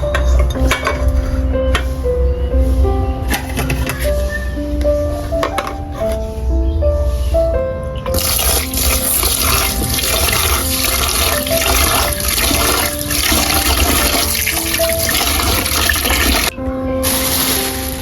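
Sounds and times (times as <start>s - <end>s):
soft background music: 0.0s - 18.0s
tap water running into sink: 8.1s - 18.0s.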